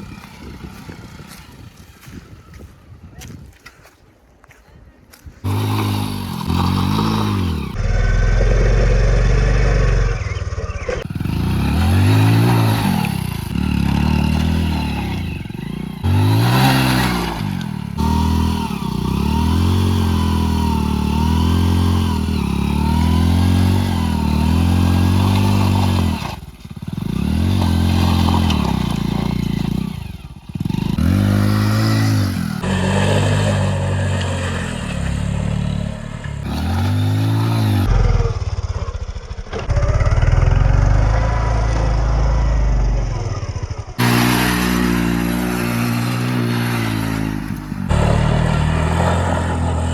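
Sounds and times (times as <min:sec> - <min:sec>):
motorcycle engine revving: 0:00.0 - 0:02.6, 0:05.4 - 0:49.9.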